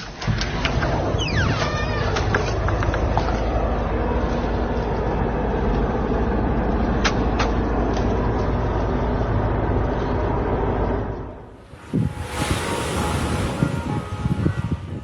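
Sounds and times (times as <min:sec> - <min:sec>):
loud low rumbling: 0:09.8 - 0:15.0.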